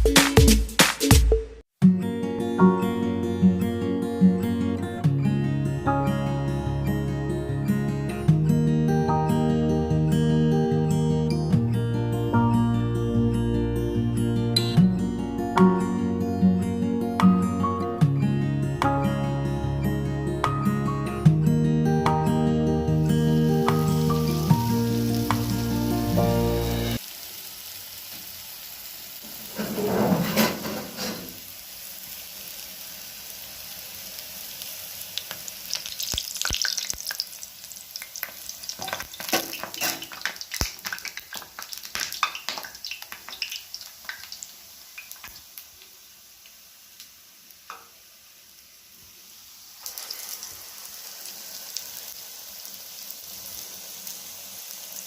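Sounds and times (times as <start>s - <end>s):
food sizzling in hot oil: 21.9s - 55.0s
oil crackling and popping: 23.5s - 29.9s, 31.3s - 48.0s, 49.7s - 55.0s.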